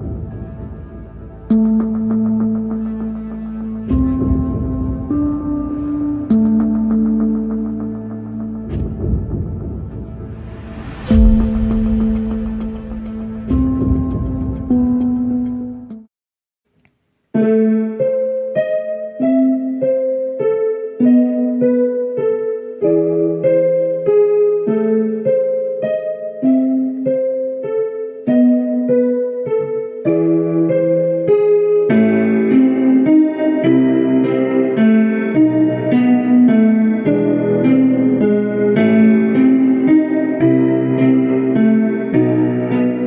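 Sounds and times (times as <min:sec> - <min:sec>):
keyboard playing repeating notes: 0:00.0 - 0:10.4, 0:11.1 - 0:16.0, 0:17.4 - 0:43.0.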